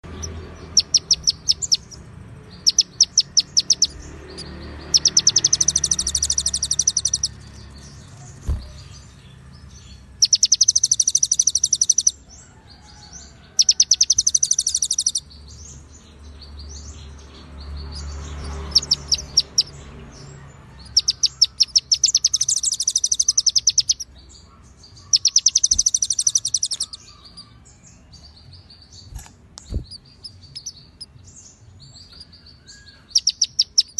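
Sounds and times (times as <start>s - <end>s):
songbird rattling trills: 0.0s - 12.3s, 13.2s - 15.9s, 17.8s - 24.2s, 25.1s - 27.5s, 33.0s - 33.9s.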